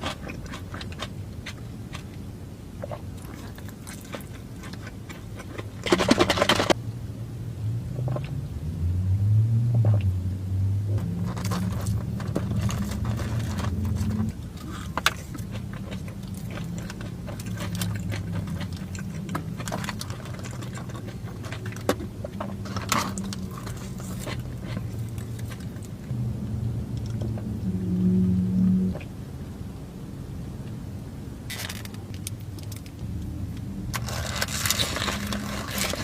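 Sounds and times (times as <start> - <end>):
chewing: 0.0 - 2.2, 2.8 - 6.2, 11.0 - 26.1, 34.0 - 36.0
low hum: 0.0 - 36.0
wrapper rustling: 34.0 - 36.0.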